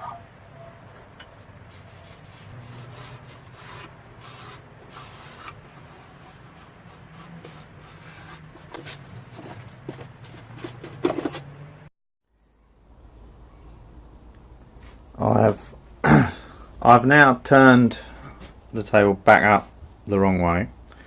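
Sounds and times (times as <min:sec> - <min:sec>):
hand scrubbing on wood: 0:01.7 - 0:11.0.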